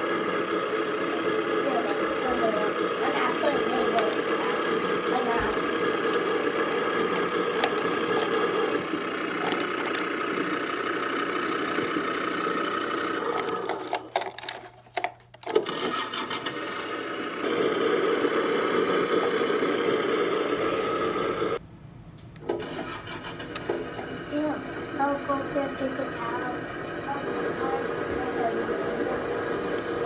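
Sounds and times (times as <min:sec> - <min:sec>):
simulated diesel engine from speaker: 0:00.0 - 0:21.6, 0:22.4 - 0:30.0.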